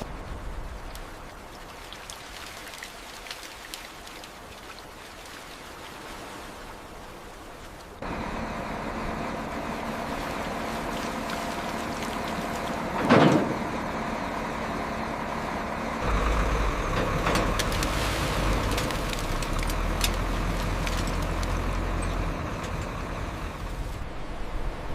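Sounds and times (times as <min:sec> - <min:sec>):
heavy truck engine running: 0:08.0 - 0:24.8.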